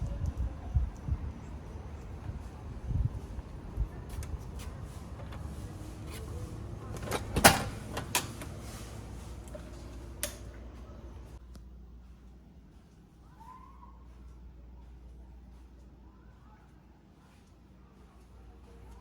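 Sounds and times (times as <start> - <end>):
door clicks and knocks: 7.0 - 8.6.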